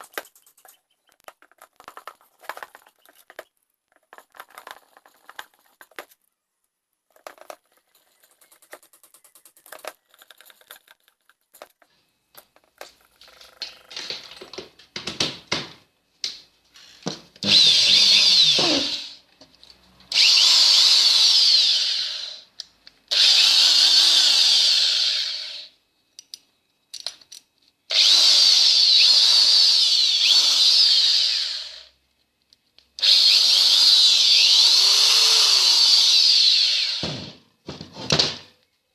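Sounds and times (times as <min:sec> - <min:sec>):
electric hand drill whirring: 0:17.4 - 0:19.2, 0:20.1 - 0:22.5, 0:23.1 - 0:25.8, 0:27.9 - 0:31.9, 0:33.0 - 0:37.3.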